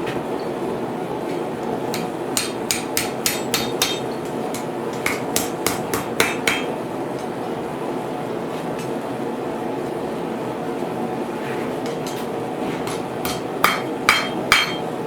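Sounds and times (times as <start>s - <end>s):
hammer striking steel on anvil: 1.9s - 6.8s, 11.8s - 15.0s.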